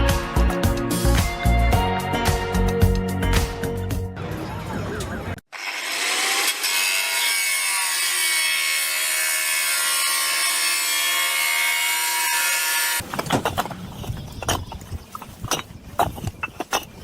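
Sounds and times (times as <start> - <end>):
power saw cutting wood: 5.5 - 13.0.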